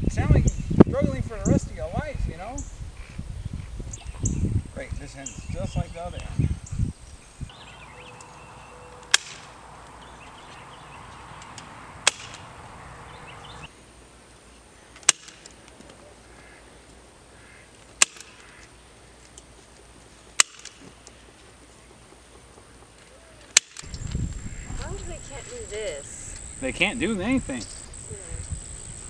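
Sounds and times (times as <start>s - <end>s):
faint outdoor background: 0.0s - 29.0s
sharp clicks or snaps: 9.0s - 12.5s.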